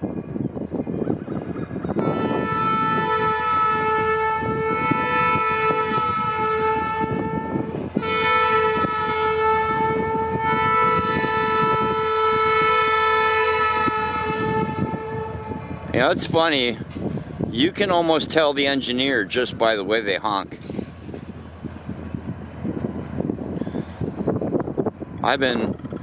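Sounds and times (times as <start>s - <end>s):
locomotive rumble: 0.0s - 26.0s
locomotive air horn blasts: 1.9s - 16.1s.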